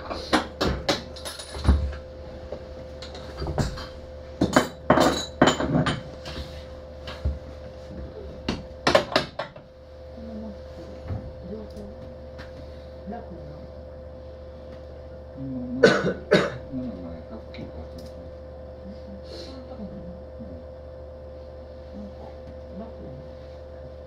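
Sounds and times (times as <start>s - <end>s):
steady electrical hum: 0.0s - 24.0s.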